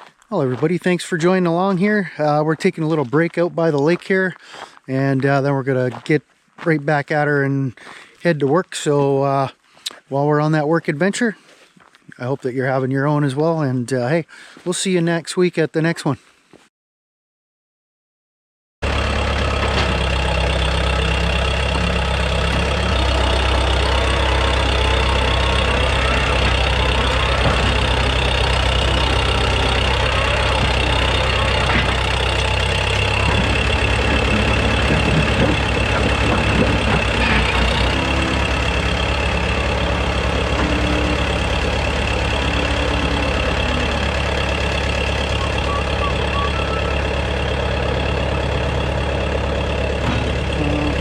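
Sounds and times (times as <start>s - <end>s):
backhoe engine running: 18.8s - 51.0s.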